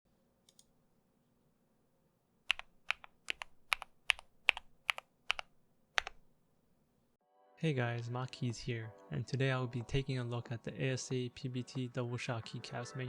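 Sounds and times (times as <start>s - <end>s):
mechanical keyboard keys clicking: 2.5s - 6.3s.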